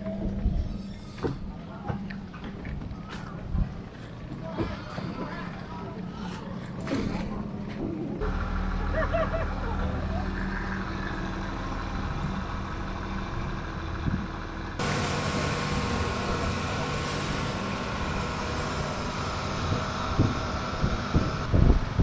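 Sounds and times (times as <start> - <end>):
boat engine humming: 8.2 - 22.0.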